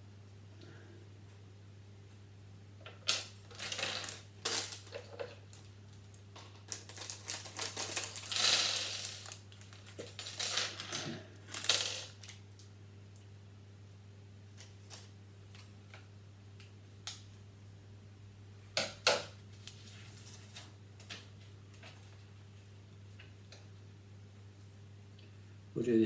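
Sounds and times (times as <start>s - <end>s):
plastic toy bricks clattering: 2.9s - 5.4s, 6.4s - 12.4s.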